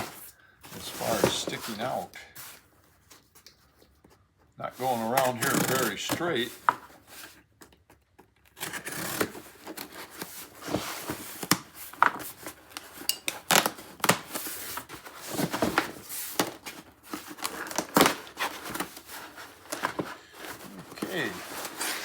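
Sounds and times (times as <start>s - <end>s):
cardboard crackling and rustling: 0.0s - 22.0s
knife scraping cardboard: 4.8s - 7.4s, 8.6s - 12.8s, 13.6s - 22.0s.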